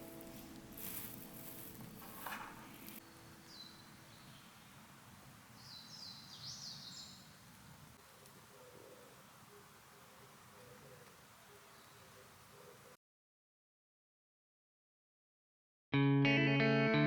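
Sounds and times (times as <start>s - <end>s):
faint outdoor ambience: 0.0s - 13.0s
small bird chirping: 2.7s - 4.9s, 5.6s - 7.4s.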